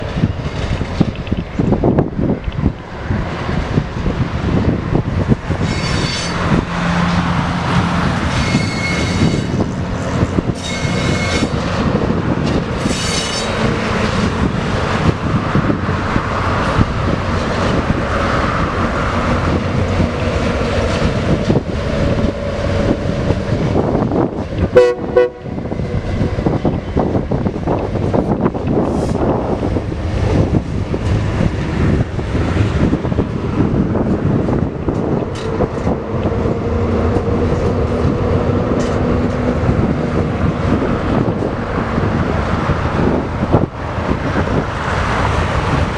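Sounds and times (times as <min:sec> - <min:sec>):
diesel locomotive engine rumble: 0:00.0 - 0:45.9
train wheel noise: 0:00.0 - 0:45.9
train horn toots: 0:24.7 - 0:26.0.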